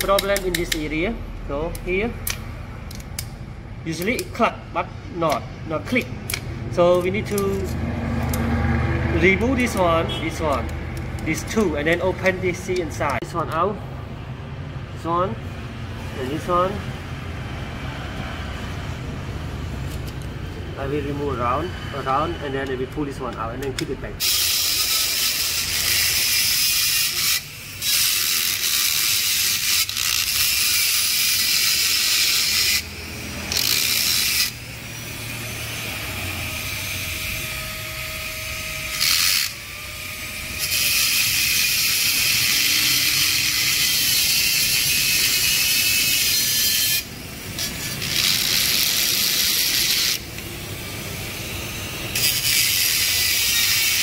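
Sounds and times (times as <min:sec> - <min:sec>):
power tool hissing and grinding: 0:24.2 - 0:54.0.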